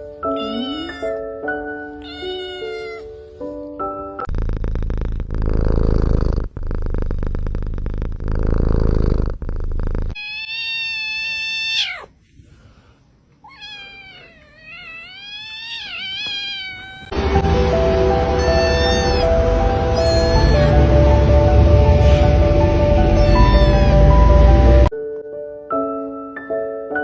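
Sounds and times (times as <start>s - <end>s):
music: 0.0s - 4.3s, 17.1s - 27.0s
cat meowing: 0.2s - 3.2s, 10.2s - 12.2s, 13.4s - 17.2s, 18.2s - 20.9s, 23.0s - 24.2s
cat purring: 0.4s - 1.2s, 4.2s - 10.2s, 13.8s - 24.9s.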